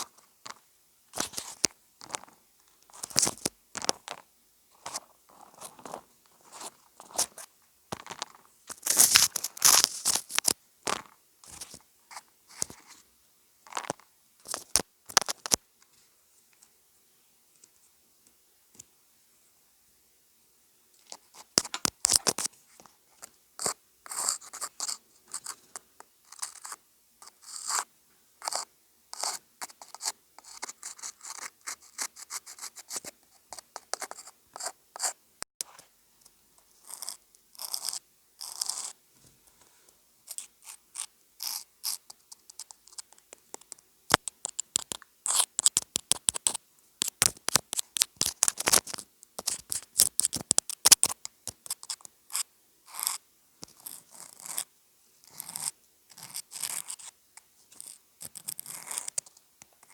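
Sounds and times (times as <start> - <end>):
scratching and scraping: 4.8 - 13.0.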